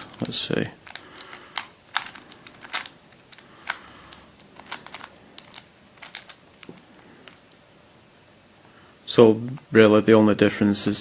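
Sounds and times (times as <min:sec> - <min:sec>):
plastic puzzle clicks: 0:00.0 - 0:07.6.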